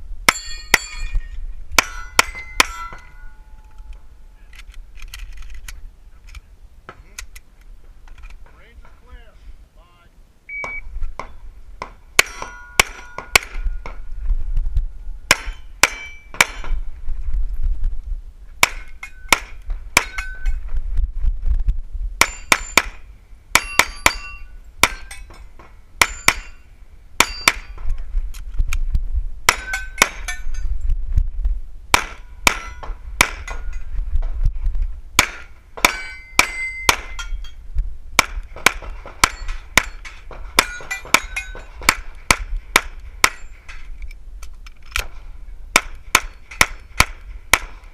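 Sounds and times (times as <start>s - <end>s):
steel targets ringing when hit: 0.3s - 3.6s, 12.2s - 13.9s, 15.3s - 16.7s, 22.2s - 23.0s, 23.6s - 25.3s, 26.0s - 27.8s, 32.2s - 33.8s, 35.2s - 37.6s, 39.2s - 41.7s.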